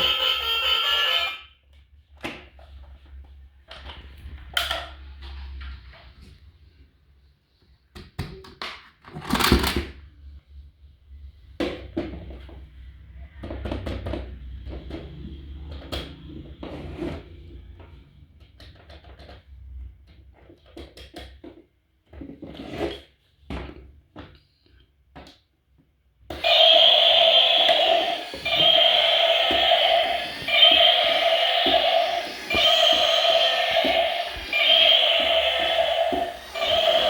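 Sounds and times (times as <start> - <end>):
low hum: 26.3 - 37.0.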